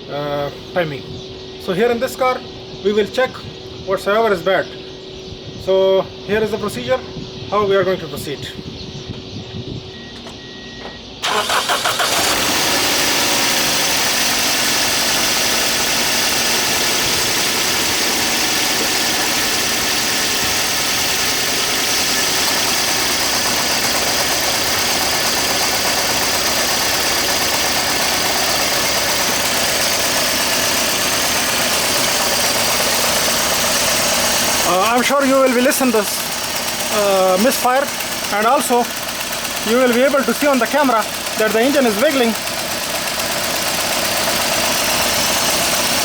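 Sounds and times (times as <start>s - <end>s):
car engine starting and idling: 9.9s - 46.0s.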